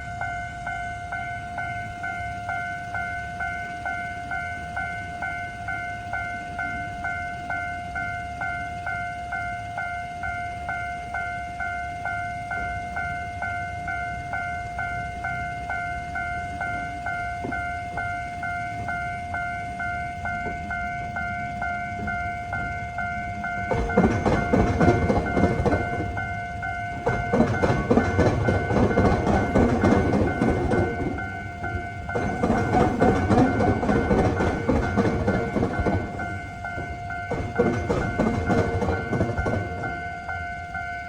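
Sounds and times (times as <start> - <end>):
level-crossing bell ringing: 0.0 - 41.0
train wheels clattering: 20.2 - 41.0.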